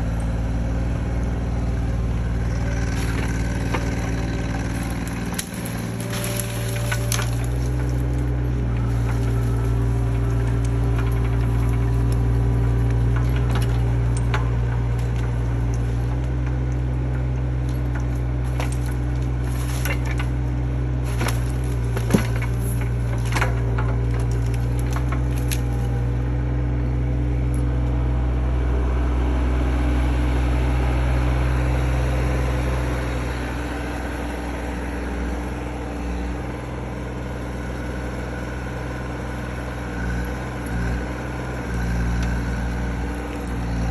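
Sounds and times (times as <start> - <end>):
excavator engine running: 0.0 - 43.9
branches cracking and snapping: 2.4 - 26.4, 32.9 - 43.9.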